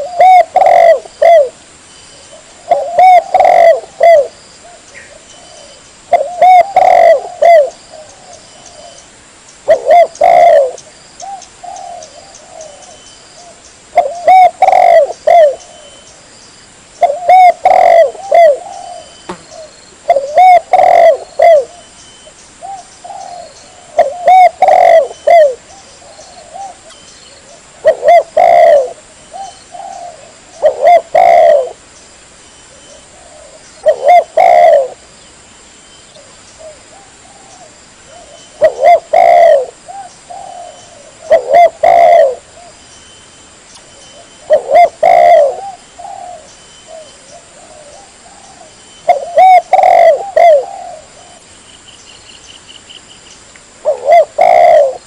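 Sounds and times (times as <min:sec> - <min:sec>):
dove cooing: 0:00.0 - 0:01.6, 0:02.2 - 0:16.1, 0:17.0 - 0:21.9, 0:22.6 - 0:31.8, 0:32.7 - 0:35.0, 0:36.2 - 0:42.8, 0:44.1 - 0:51.5, 0:53.8 - 0:55.0.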